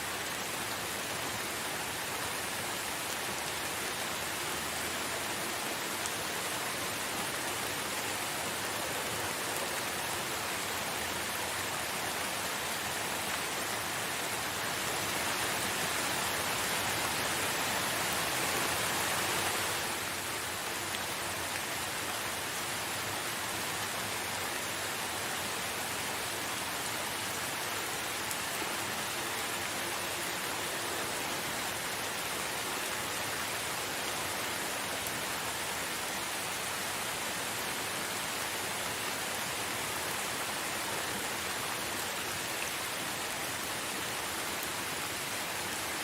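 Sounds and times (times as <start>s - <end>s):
steady rain falling: 0.0s - 46.0s.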